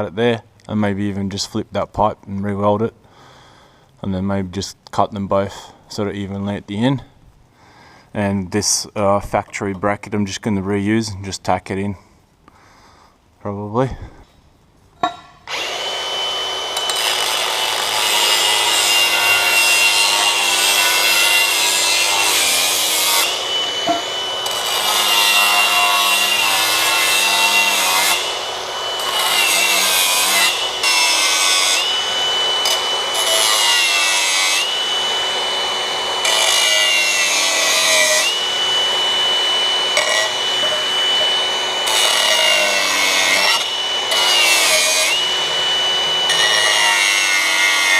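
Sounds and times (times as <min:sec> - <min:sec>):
angle grinder cutting steel pipe: 0:15.0 - 0:47.9.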